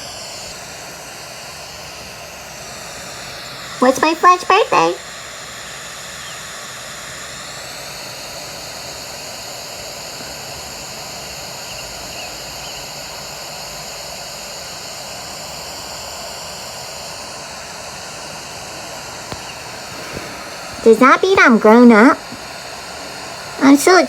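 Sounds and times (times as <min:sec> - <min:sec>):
steady rushing noise: 0:18.1 - 0:24.0.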